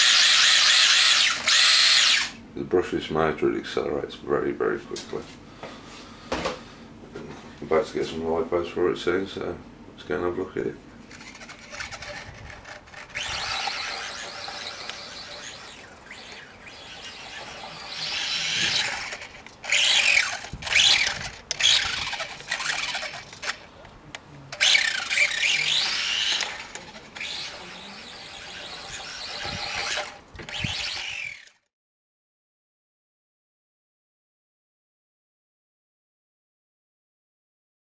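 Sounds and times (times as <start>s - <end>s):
electric motor whining: 0.0s - 2.4s, 11.1s - 23.7s, 24.5s - 31.6s.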